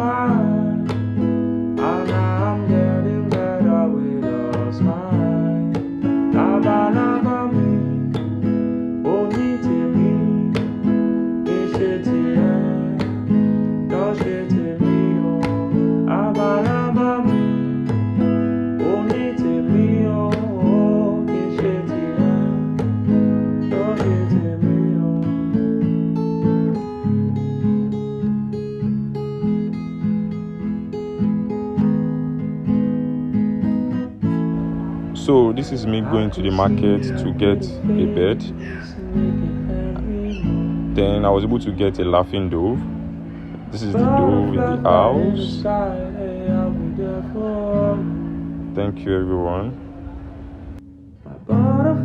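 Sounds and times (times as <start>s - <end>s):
acoustic guitar music: 0.0s - 52.0s
pitch-bending melody line: 34.4s - 50.8s.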